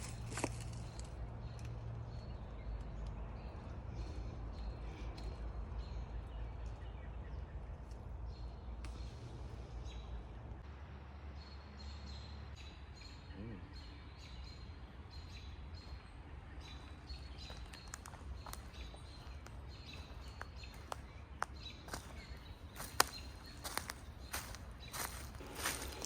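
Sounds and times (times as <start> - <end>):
songbirds chirping: 0.0 - 26.0.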